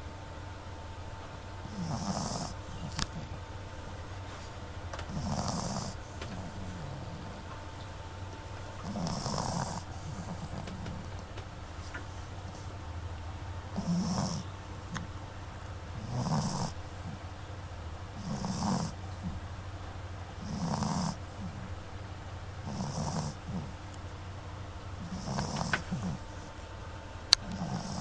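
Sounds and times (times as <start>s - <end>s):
pet snoring: 1.6s - 3.4s, 4.4s - 7.5s, 8.8s - 12.7s, 13.7s - 15.1s, 15.9s - 17.3s, 18.1s - 19.4s, 20.4s - 21.7s, 22.6s - 23.8s, 25.0s - 26.5s, 27.3s - 28.0s.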